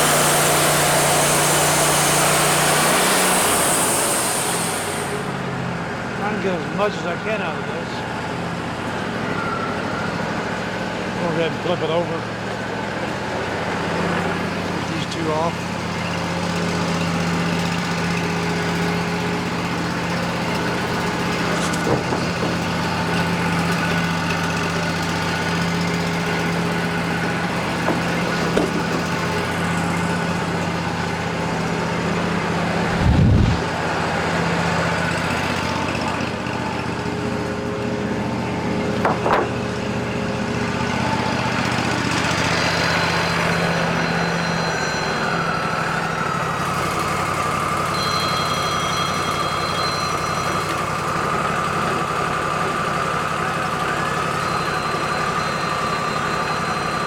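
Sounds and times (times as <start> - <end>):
sawmill engine running: 0.0 - 57.0
knocks: 21.5 - 23.0, 27.6 - 29.4, 38.9 - 39.7.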